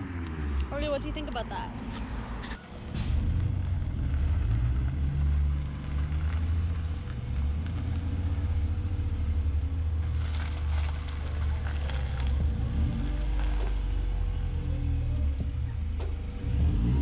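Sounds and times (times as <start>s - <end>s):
car engine rumbling and revving: 0.0s - 17.0s.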